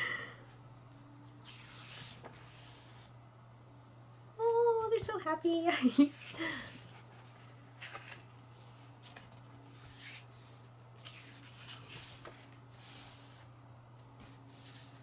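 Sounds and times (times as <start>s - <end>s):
paper pages rustling: 1.4s - 3.0s, 6.2s - 13.5s.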